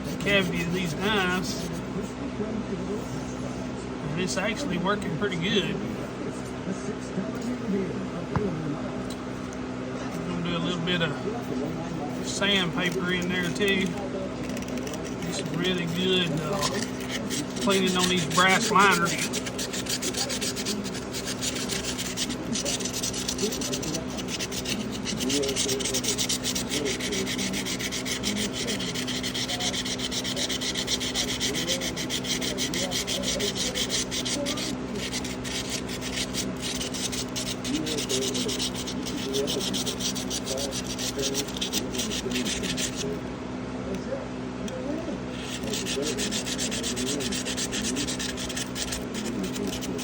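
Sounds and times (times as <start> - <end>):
sandpaper rasping on metal: 0.0 - 1.8, 12.2 - 43.2, 45.3 - 50.0
steady low hum: 0.0 - 50.0.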